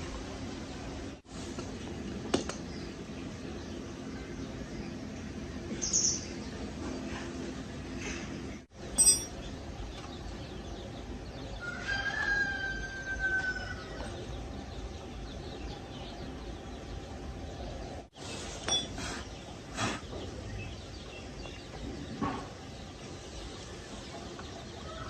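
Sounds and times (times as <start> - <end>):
rooster crowing: 11.6 - 14.0.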